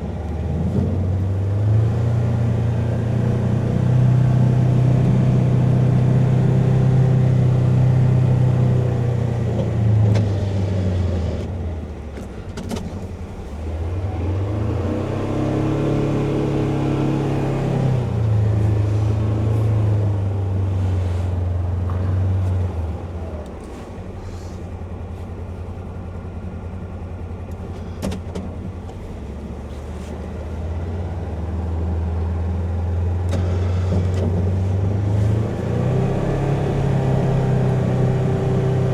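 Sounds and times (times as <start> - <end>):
engine running under load: 0.0 - 38.9.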